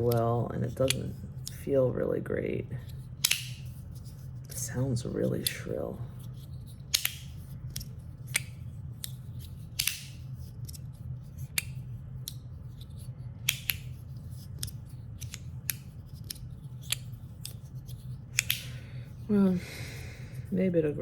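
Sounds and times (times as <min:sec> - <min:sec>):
magnetic slider snapping clicks: 0:09.8 - 0:10.1, 0:13.5 - 0:13.9.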